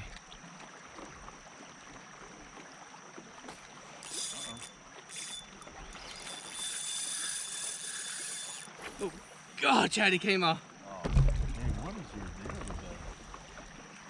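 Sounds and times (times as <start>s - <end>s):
water lapping: 0.0s - 9.6s
fishing reel drag buzzing: 3.6s - 9.5s.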